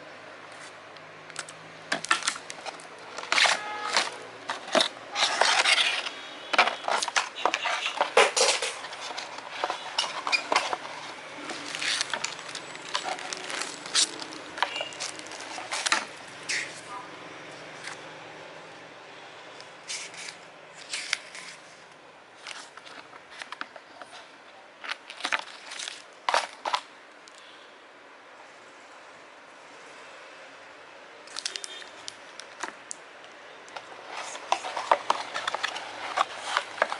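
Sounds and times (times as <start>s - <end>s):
box and packaging handled: 0.6s - 16.8s, 22.4s - 24.2s, 24.8s - 26.9s, 33.7s - 36.9s.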